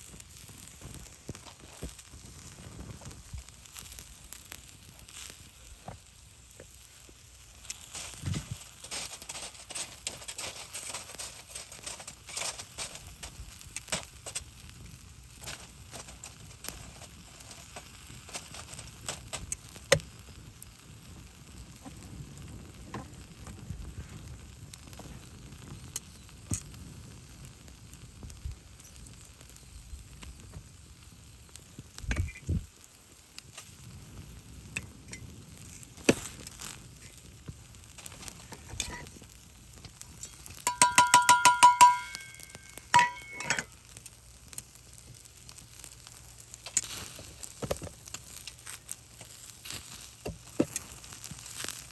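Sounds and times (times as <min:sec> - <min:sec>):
fire crackling: 0:00.0 - 0:51.9
sharp pops: 0:15.3 - 0:20.2, 0:31.8 - 0:32.6, 0:34.7 - 0:39.2
rapid clicks with ringing tone: 0:40.6 - 0:43.7.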